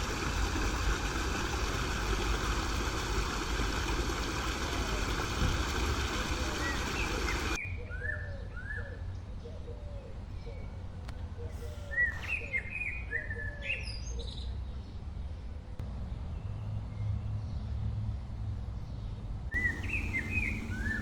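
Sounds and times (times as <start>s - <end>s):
small birds chirping: 4.6s - 15.0s, 18.8s - 21.0s.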